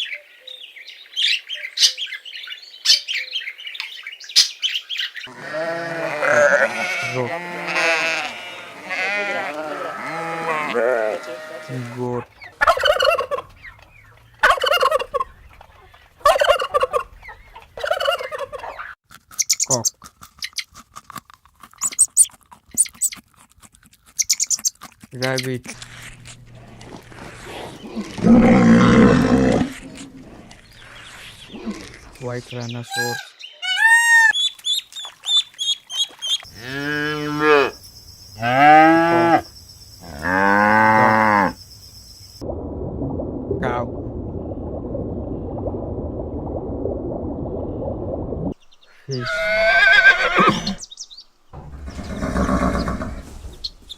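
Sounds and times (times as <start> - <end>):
cow mooing: 5.3 - 12.1, 36.5 - 37.8, 38.4 - 39.4, 40.1 - 41.6
turkey gobbling: 12.4 - 19.0, 32.9 - 34.5.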